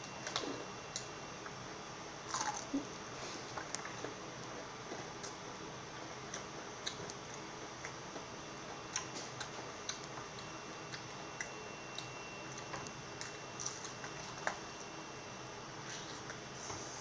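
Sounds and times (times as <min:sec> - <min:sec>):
chewing mouth clicks and smacks: 0:06.3 - 0:08.0, 0:08.9 - 0:14.6.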